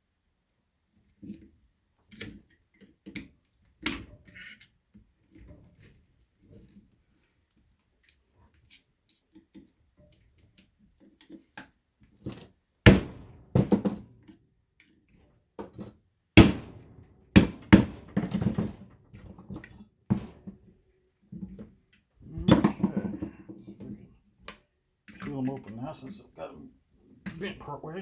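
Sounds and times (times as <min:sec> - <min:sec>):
metal clattering and rattling: 0:12.3 - 0:14.1, 0:15.6 - 0:20.7
loud sharp knocks on metal: 0:12.9 - 0:14.0, 0:16.4 - 0:18.9, 0:20.1 - 0:20.5.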